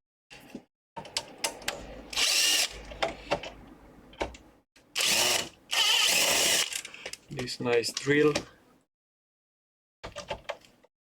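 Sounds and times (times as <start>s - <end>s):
electric drill running: 2.2s - 2.7s, 5.0s - 6.8s.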